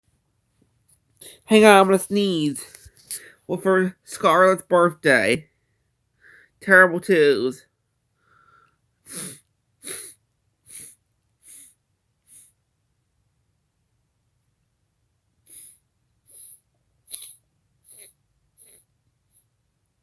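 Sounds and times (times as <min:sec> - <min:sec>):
person taking sharp breaths: 0:01.2 - 0:01.5, 0:03.0 - 0:03.5, 0:06.2 - 0:06.6, 0:08.2 - 0:12.5, 0:15.5 - 0:16.6.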